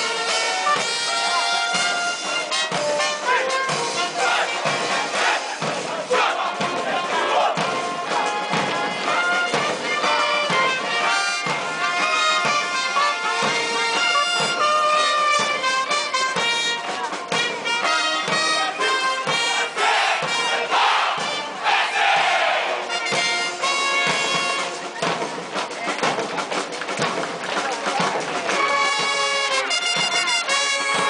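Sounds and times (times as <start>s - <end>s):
band music with wind instruments: 0.0s - 31.0s
crowd shouting: 0.1s - 13.8s, 18.2s - 23.6s.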